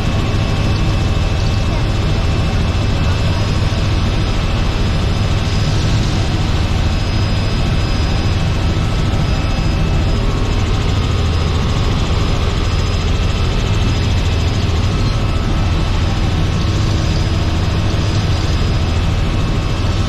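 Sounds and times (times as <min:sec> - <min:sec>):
helicopter engine and rotor drone: 0:00.0 - 0:20.0.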